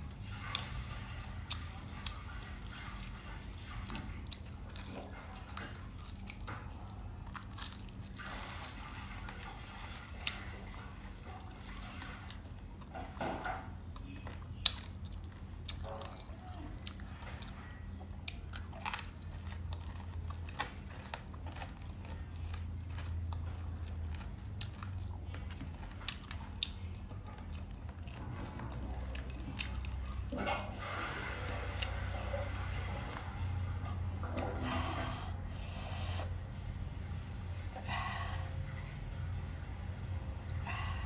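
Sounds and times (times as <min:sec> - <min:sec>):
person chewing crunchy food: 0:00.0 - 0:33.4
steady low hum: 0:12.3 - 0:41.0.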